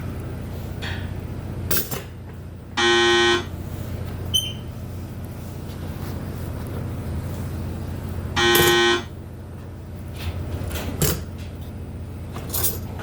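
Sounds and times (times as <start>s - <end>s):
low mechanical hum: 0.0s - 13.0s
loud horn-like beep: 2.8s - 3.5s, 8.4s - 9.2s.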